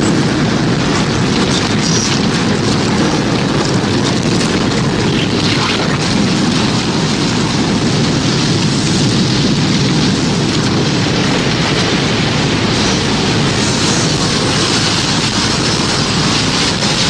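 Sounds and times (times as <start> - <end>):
heavy rain: 0.0 - 17.0
roaring storm wind: 0.0 - 17.0.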